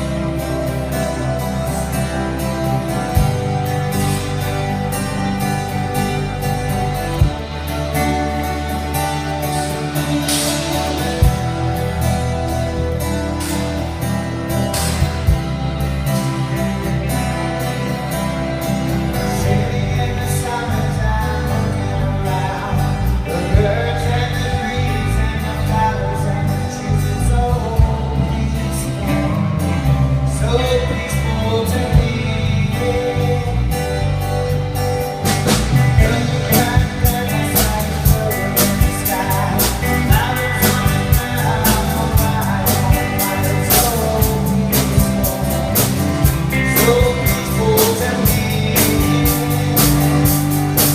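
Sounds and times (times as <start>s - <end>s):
person singing: 0.0s - 34.3s, 35.6s - 50.9s
rock band playing: 0.0s - 50.9s
drum and cymbal hits: 7.0s - 15.8s, 35.3s - 50.9s.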